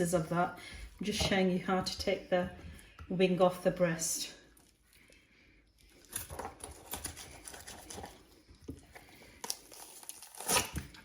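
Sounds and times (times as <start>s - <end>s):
wet tearing of raw chicken: 4.5s - 11.0s.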